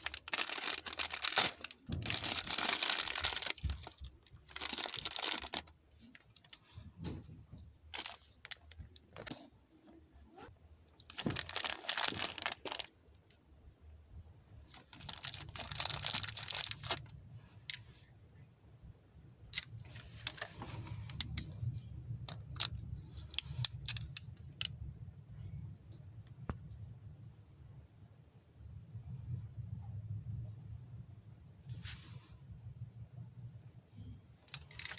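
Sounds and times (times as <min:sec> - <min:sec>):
packaging crinkling: 0:00.0 - 0:06.6, 0:07.9 - 0:09.4, 0:11.0 - 0:12.9, 0:14.7 - 0:17.1, 0:34.5 - 0:34.9
plastic parts clicking and rattling: 0:00.0 - 0:09.4, 0:10.9 - 0:13.3, 0:14.7 - 0:17.9, 0:19.5 - 0:21.6, 0:22.2 - 0:24.8, 0:34.4 - 0:34.9.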